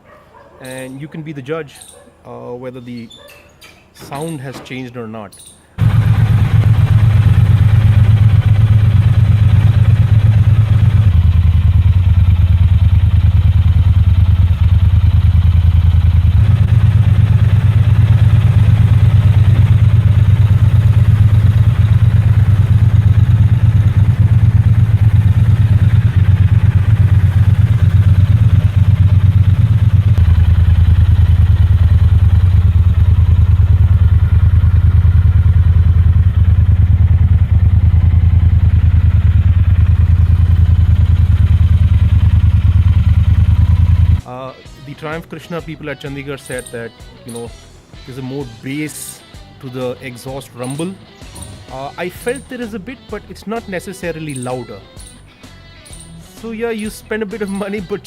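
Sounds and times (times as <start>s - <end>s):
motorcycle engine running: 5.8s - 44.3s, 50.4s - 52.9s, 55.9s - 58.0s.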